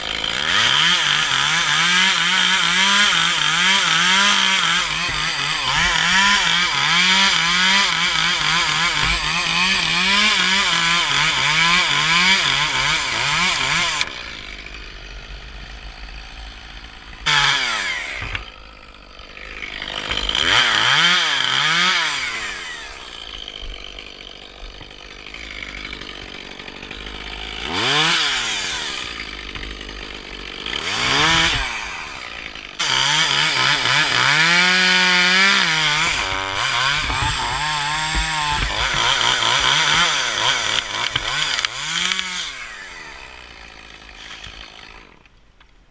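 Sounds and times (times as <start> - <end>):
chainsaw cutting wood: 0.0 - 45.9.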